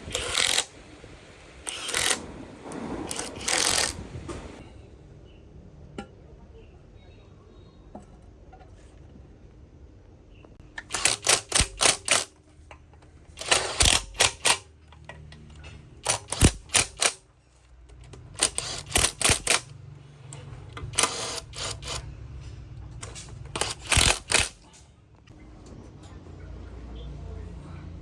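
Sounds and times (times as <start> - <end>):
rasping burst: 0.0 - 4.7, 18.4 - 19.7, 23.0 - 24.7.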